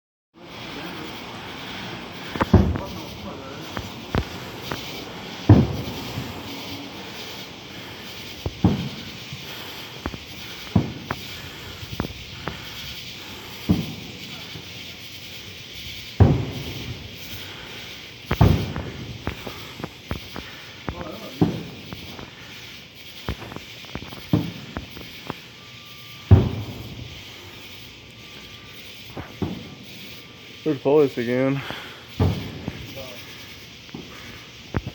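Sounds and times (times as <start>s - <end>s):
aerial shell bursts with echo: 0.4s - 14.8s
fireworks bangs: 0.4s - 34.9s.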